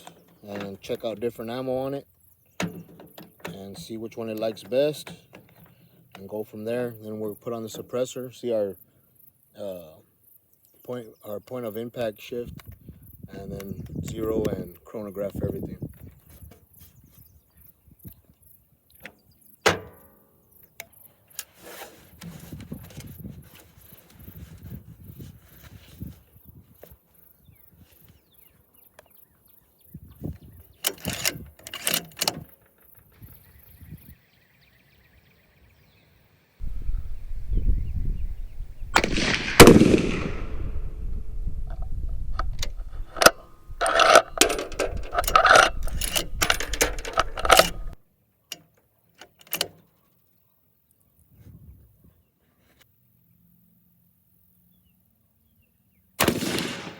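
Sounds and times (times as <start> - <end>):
metallic clicks and clatter: 30.8 - 32.9, 41.7 - 49.8
rifle shot: 38.4 - 41.9, 56.2 - 56.9
rifle handling clicks: 38.6 - 40.8, 41.7 - 48.6.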